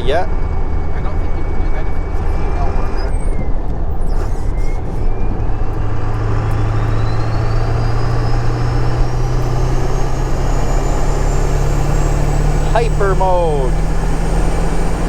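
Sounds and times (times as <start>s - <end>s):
low diesel engine drone: 5.0s - 15.0s.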